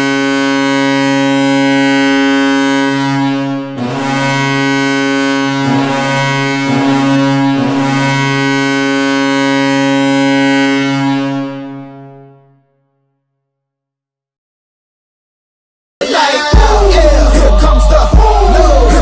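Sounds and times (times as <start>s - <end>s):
goal horn blowing long note: 0.0s - 12.8s.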